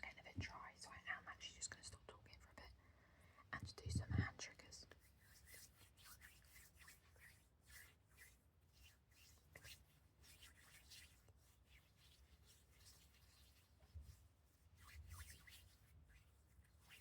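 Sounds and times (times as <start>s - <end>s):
hands rubbing together: 4.9s - 17.0s.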